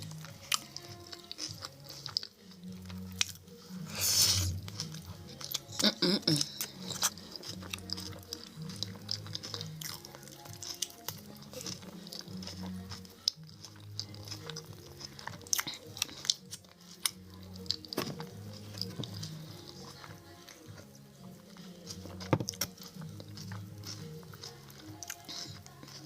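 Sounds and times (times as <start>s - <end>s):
background music with bass line: 0.0s - 26.0s
chewing and crunching food: 0.0s - 26.0s.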